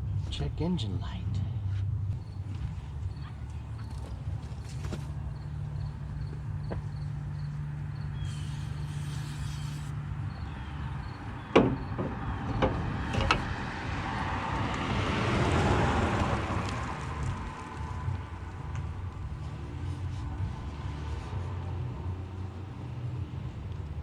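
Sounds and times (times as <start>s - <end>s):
vehicle passing: 7.0s - 24.0s
sharp metallic knocks: 11.5s - 13.6s.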